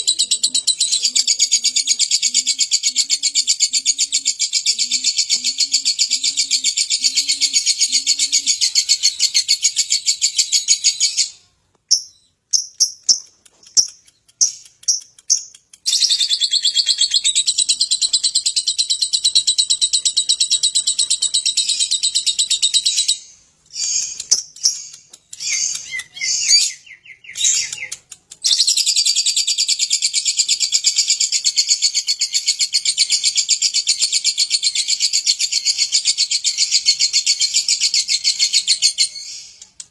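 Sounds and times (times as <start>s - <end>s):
bird rapid high chattering: 11.9s - 39.8s.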